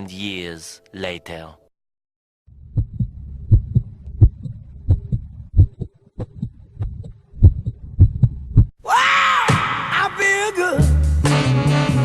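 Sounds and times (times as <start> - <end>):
heartbeat thumps: 2.6 - 8.7.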